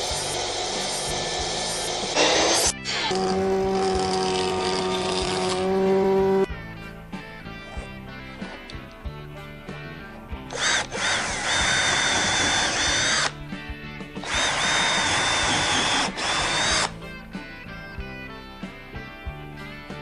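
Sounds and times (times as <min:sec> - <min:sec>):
electric drill whining: 0:00.0 - 0:06.5, 0:10.4 - 0:13.4, 0:14.2 - 0:17.1.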